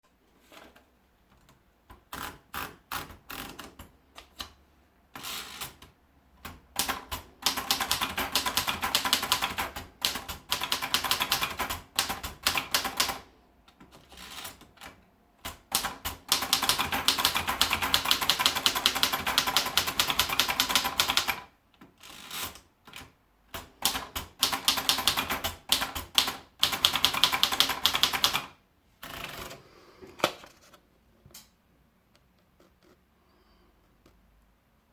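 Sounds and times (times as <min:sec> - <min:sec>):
manual typewriter typing: 0:02.0 - 0:29.6.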